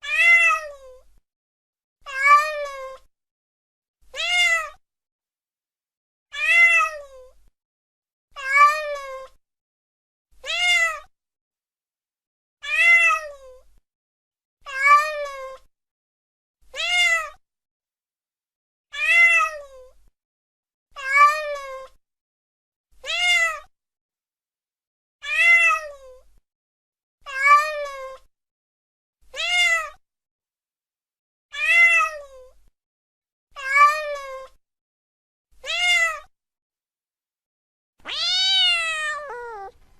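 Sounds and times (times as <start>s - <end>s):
cat meowing: 0.0s - 1.0s, 2.1s - 3.0s, 4.1s - 4.8s, 6.4s - 7.2s, 8.4s - 9.3s, 10.4s - 11.1s, 16.8s - 17.3s, 19.0s - 19.7s, 23.0s - 23.6s, 29.4s - 30.0s, 31.6s - 32.3s, 33.6s - 34.5s, 35.6s - 36.3s, 38.0s - 39.8s.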